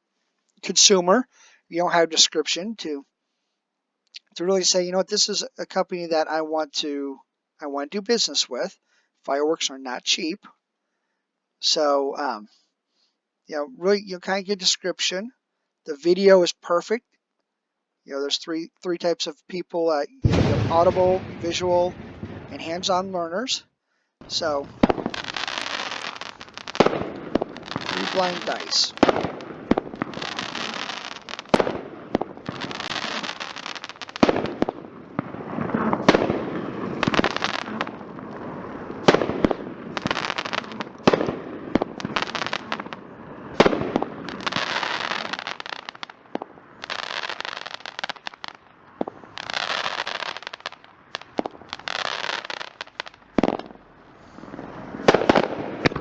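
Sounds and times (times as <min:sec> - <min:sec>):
firework shots and bursts: 0:20.2 - 0:23.5, 0:24.2 - 0:56.0
firework hissing and crackling: 0:24.2 - 0:56.0.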